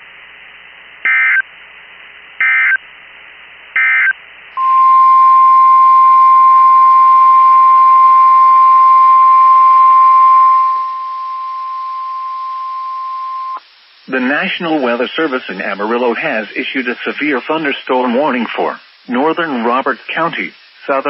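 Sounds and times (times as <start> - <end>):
steady warning alarm tone: 3.8 - 13.6.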